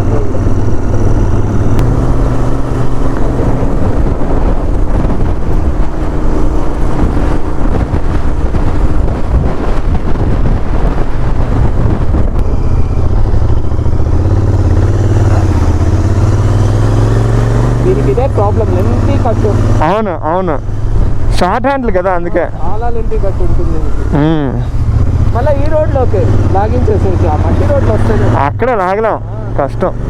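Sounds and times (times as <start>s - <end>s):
motorcycle engine rumble: 0.0s - 30.0s
wind rushing over microphone: 0.0s - 30.0s.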